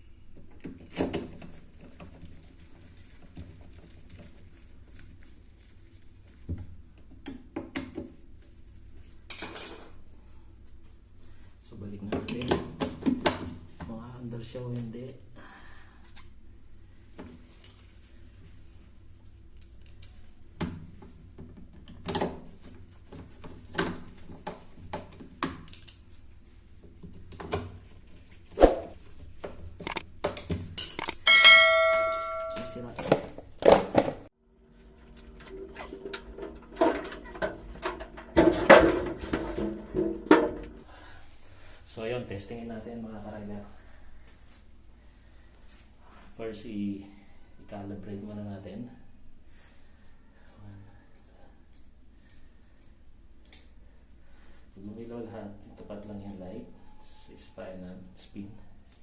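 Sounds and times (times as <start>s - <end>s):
clicks and knocks of parts handled: 29.8s - 31.2s, 34.7s - 40.8s
scraping rustle: 34.6s - 40.8s.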